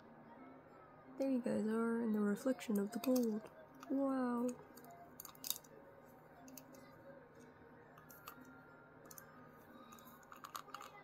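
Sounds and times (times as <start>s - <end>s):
plastic toy clicking: 2.8s - 5.7s, 6.4s - 6.8s, 8.0s - 8.5s, 9.1s - 9.3s, 9.9s - 11.0s.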